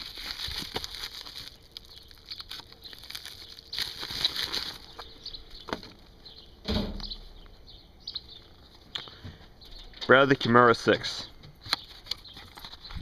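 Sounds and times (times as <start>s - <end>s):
box rustling: 0.0s - 5.9s
thump: 6.6s - 7.2s.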